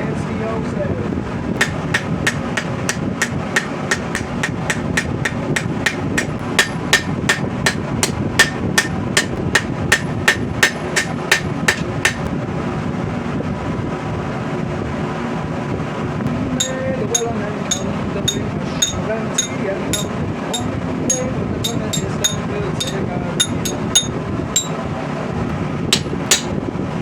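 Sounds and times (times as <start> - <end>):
hammer striking steel on anvil: 1.6 - 12.3, 16.6 - 24.8, 25.9 - 26.6.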